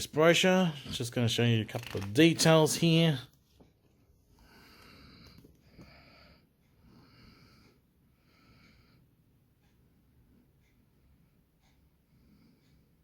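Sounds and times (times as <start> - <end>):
faint wheezy breathing: 4.3 - 9.8, 10.7 - 13.0.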